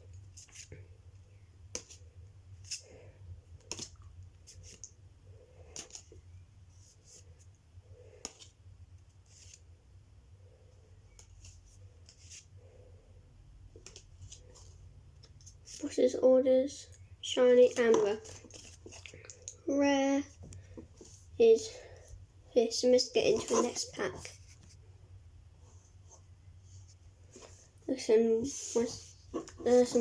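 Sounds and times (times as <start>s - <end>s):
trading cards flipped: 3.6s - 4.0s.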